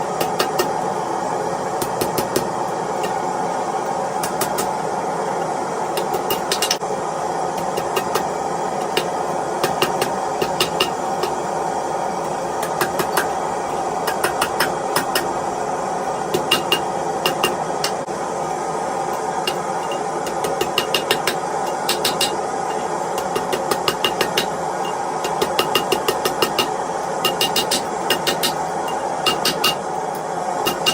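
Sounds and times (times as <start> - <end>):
hammer ringing on anvil: 16.4 - 18.0, 19.5 - 29.8, 30.7 - 30.9.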